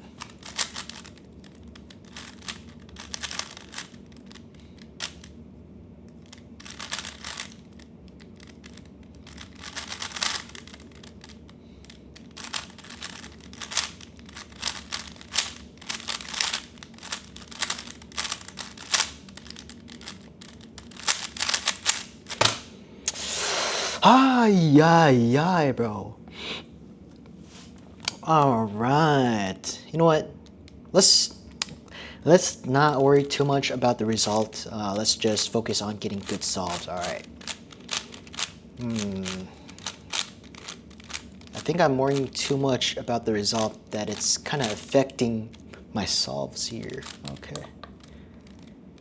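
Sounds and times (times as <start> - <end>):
puzzle cube clicking: 0.2 - 5.3, 6.2 - 23.2, 34.1 - 42.6, 43.4 - 45.3, 46.9 - 48.7.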